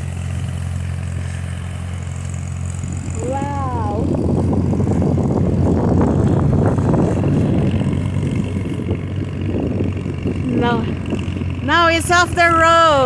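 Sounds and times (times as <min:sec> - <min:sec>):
branches scraping along road: 0:00.0 - 0:03.4
vehicle engine drone: 0:00.0 - 0:13.0.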